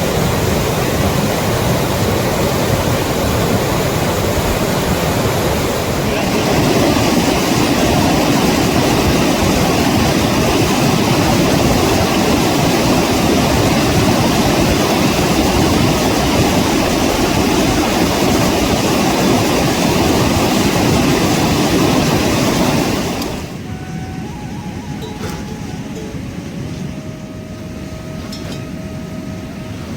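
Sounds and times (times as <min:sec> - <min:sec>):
river rushing over rapids: 0:00.0 - 0:23.6.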